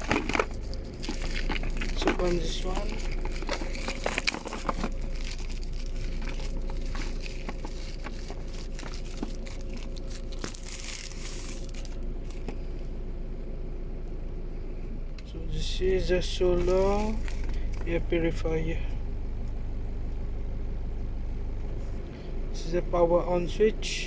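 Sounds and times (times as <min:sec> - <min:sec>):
packaging crinkling and tearing: 0:00.0 - 0:12.6, 0:16.6 - 0:17.9.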